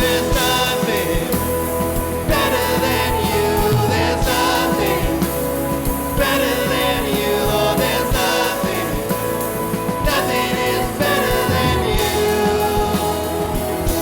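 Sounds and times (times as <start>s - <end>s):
drum hits: 0.0s - 9.1s
person singing: 0.0s - 14.0s
worship band playing: 0.0s - 14.0s.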